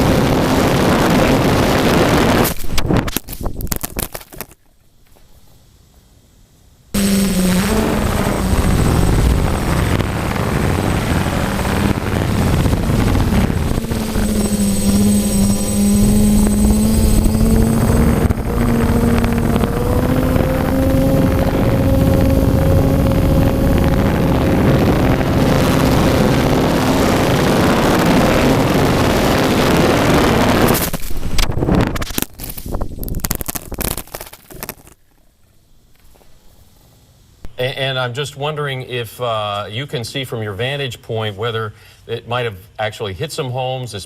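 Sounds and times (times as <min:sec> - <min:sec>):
drone motors buzzing: 0:00.0 - 0:02.6, 0:07.0 - 0:31.1
rushing air: 0:07.0 - 0:34.1.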